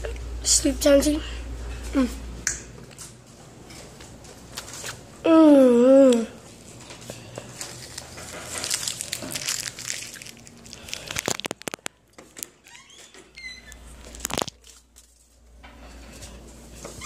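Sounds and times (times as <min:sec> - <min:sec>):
plastic packaging crinkling: 0:07.4 - 0:12.5, 0:14.0 - 0:15.2.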